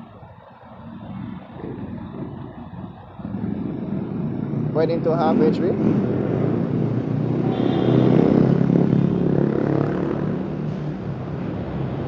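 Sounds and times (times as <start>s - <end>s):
vehicle engine and tyres: 0.0s - 12.0s.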